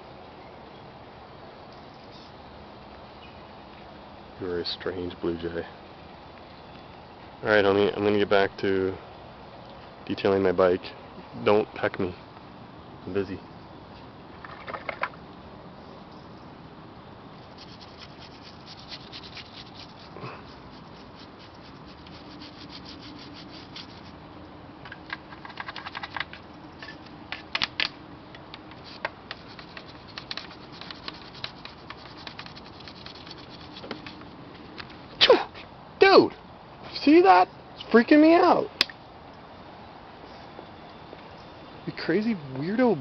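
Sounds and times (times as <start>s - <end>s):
scratching and rubbing by hand: 17.4s - 24.2s, 28.7s - 34.8s.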